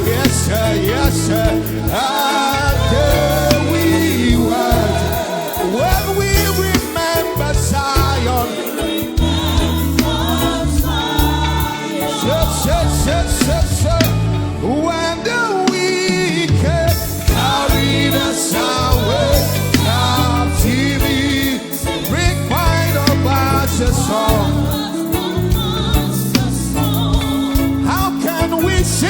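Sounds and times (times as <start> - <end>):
cymbals: 0.0 - 14.3
bass line: 0.0 - 29.0
gospel band playing: 0.0 - 29.0
voices singing: 0.0 - 29.0.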